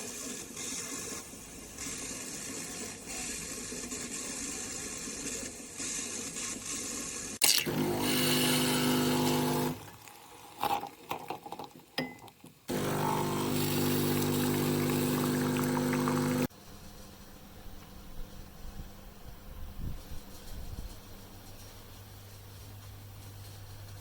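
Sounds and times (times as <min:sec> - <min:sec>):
espresso machine pump buzzing: 0:07.5 - 0:10.0, 0:12.7 - 0:16.5.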